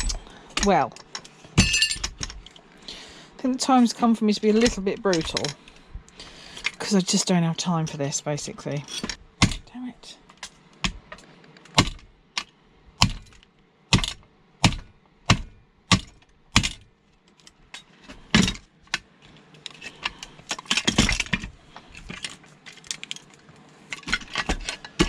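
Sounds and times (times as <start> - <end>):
metal rattling and clinking: 0.0 - 2.6.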